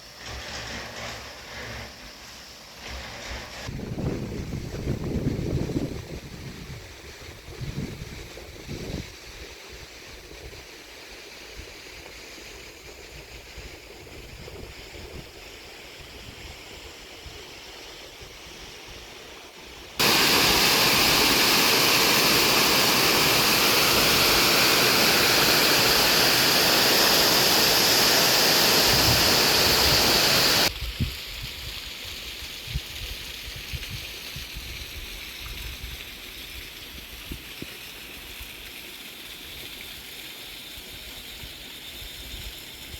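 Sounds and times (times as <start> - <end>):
rushing water: 18.1 - 41.8.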